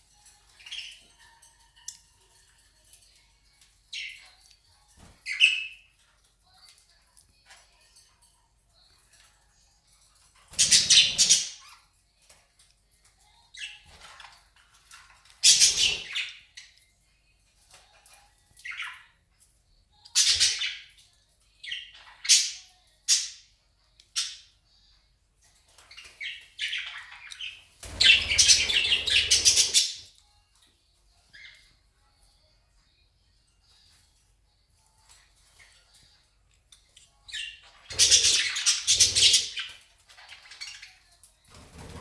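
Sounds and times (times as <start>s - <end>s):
budgies chirping and squawking: 0.3s - 1.6s, 10.4s - 11.8s, 13.6s - 16.7s, 17.7s - 19.1s, 20.1s - 21.0s, 25.5s - 30.1s, 36.9s - 42.0s.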